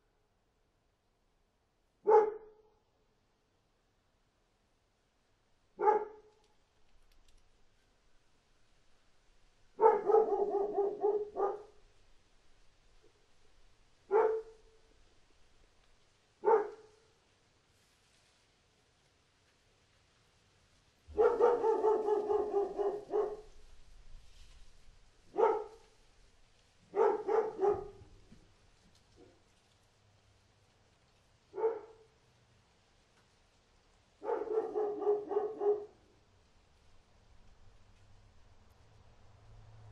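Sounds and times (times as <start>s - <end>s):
dog barking: 2.0s - 2.7s, 5.8s - 6.3s, 9.8s - 11.8s, 14.1s - 14.8s, 16.4s - 17.1s, 21.1s - 23.6s, 25.3s - 25.9s, 26.9s - 28.1s, 31.5s - 32.2s, 34.2s - 36.0s.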